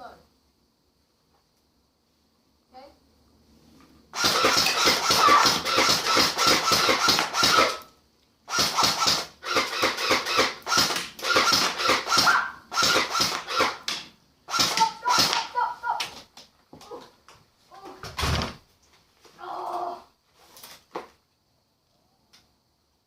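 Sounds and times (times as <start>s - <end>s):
steady whine: 3.8s - 15.6s
airsoft gun firing in bursts: 4.2s - 7.9s, 8.5s - 15.6s.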